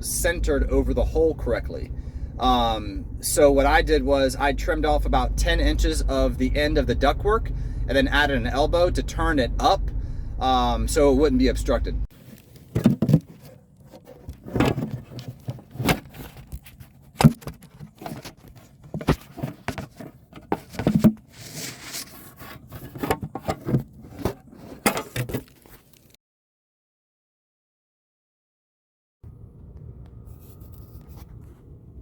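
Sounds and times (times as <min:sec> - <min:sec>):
short scrapes: 0:19.2 - 0:25.0.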